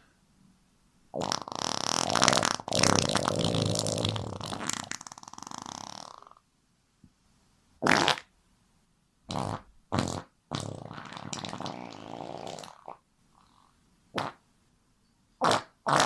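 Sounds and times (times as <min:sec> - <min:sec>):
farts: 0:01.2 - 0:06.4, 0:07.8 - 0:08.3, 0:09.3 - 0:14.4, 0:15.4 - 0:16.0.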